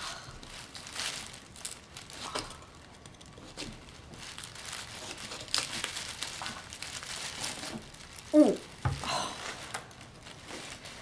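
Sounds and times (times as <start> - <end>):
fruit crinkling and cracking: 0.0 - 11.0.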